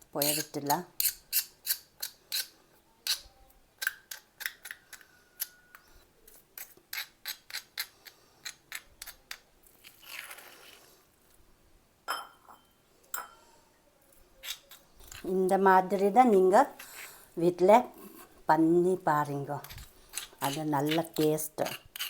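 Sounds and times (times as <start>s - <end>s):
utensil tapping stone mortar: 0.2s - 2.5s, 6.6s - 9.5s, 19.6s - 22.0s.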